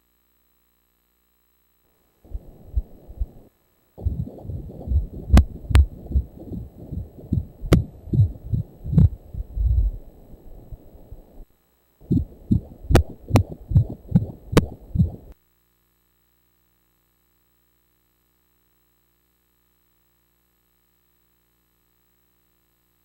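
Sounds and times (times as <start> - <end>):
heartbeat whooshing pulses: 2.3 - 3.4, 4.0 - 10.0, 12.0 - 15.4.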